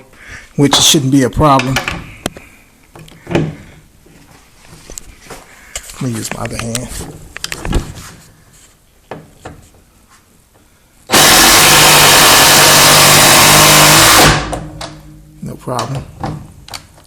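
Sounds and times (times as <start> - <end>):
impact driver hammering: 11.1 - 15.0.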